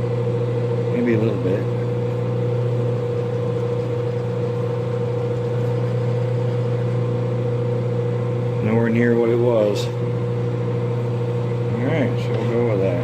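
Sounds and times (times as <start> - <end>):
lathe motor hum: 0.0 - 13.0.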